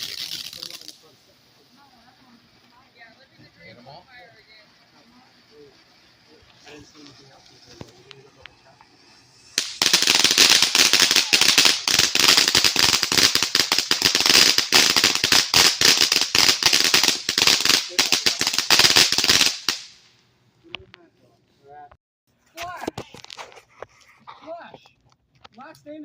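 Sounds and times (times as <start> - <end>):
firecrackers popping: 0.0 - 3.3, 4.4 - 20.2.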